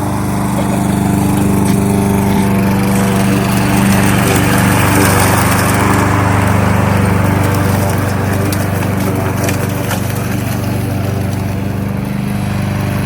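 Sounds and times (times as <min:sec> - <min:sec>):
lawnmower engine running: 0:00.0 - 0:13.0.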